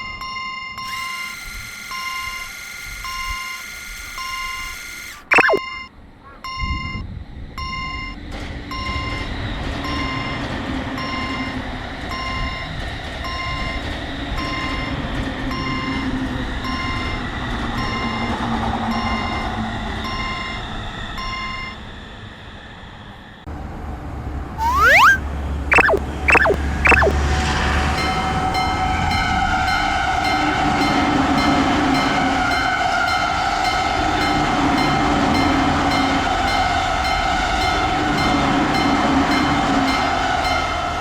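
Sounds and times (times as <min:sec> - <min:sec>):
steady electronic tone: 0:05.1 - 0:05.6, 0:24.6 - 0:27.2
rising whistle-like sweeps: 0:05.3 - 0:05.6, 0:24.6 - 0:27.2.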